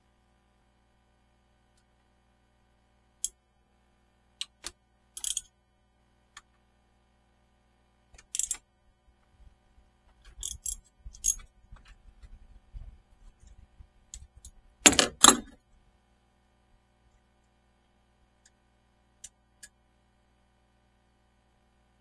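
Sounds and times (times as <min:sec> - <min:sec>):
faint steady hum: 0:00.0 - 0:22.0
metallic clicks and clinks: 0:05.2 - 0:05.5, 0:08.2 - 0:08.6, 0:10.3 - 0:11.5.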